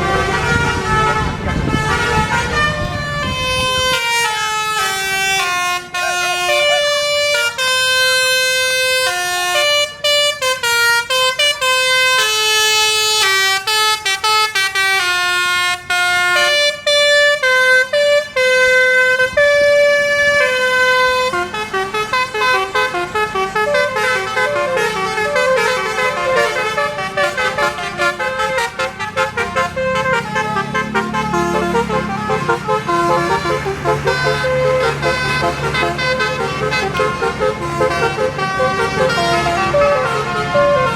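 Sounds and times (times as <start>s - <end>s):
low engine rumble: 0.0s - 10.5s, 14.9s - 40.9s
multi-trumpet bus horn playing a tune: 0.0s - 40.9s.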